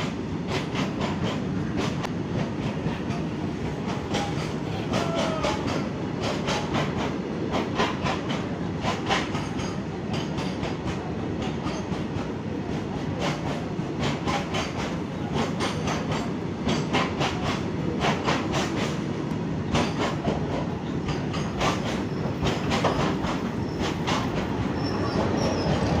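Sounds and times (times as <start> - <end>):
wheels clacking over rail joints: 0.0 - 19.0, 19.7 - 26.0
train wagons rumbling past: 0.0 - 26.0.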